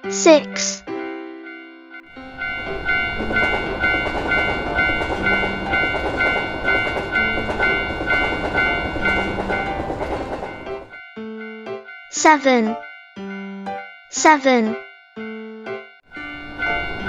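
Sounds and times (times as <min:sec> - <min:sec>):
railroad crossing bell ringing: 0:00.8 - 0:17.0
train passing with rumble: 0:02.0 - 0:11.9, 0:16.1 - 0:17.0.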